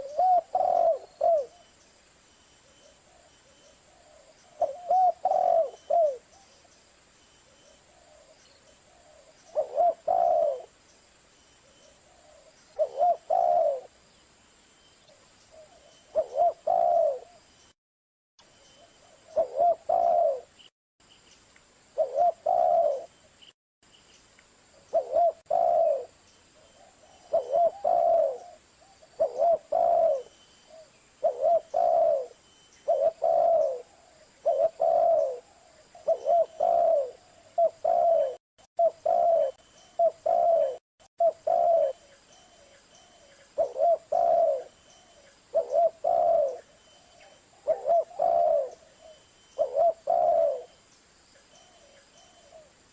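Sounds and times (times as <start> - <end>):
dove cooing: 0.0 - 1.7, 2.8 - 6.6, 7.9 - 10.8, 12.0 - 14.0, 15.5 - 17.4, 19.0 - 20.6, 22.0 - 23.1, 24.9 - 50.8, 51.7 - 52.8.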